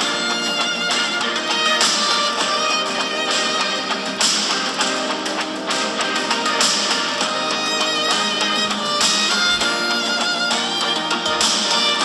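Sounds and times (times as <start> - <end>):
instrumental ringtone melody: 0.0 - 12.0.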